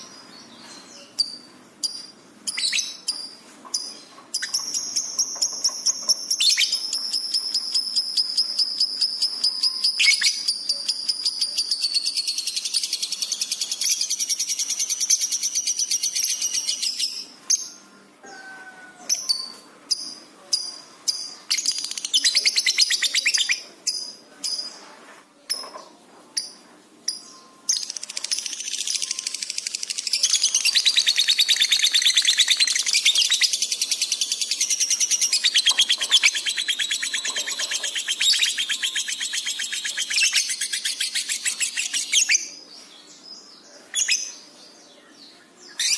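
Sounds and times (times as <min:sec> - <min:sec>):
lovebird trilling chatter: 0:27.8 - 0:42.4.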